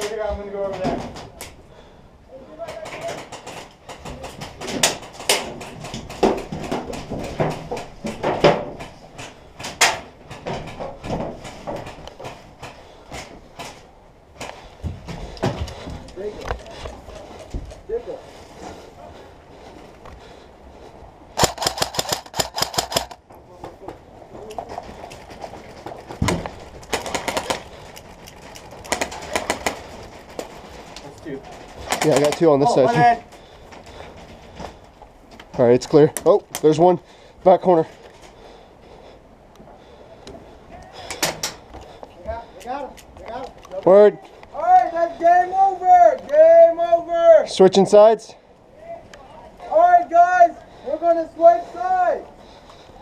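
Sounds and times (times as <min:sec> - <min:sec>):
footsteps shuffling: 0:10.6 - 0:21.2
airsoft guns firing: 0:21.4 - 0:23.2, 0:26.1 - 0:27.8, 0:28.8 - 0:30.0, 0:31.8 - 0:32.5
knocks and clicks of gear: 0:21.4 - 0:23.2.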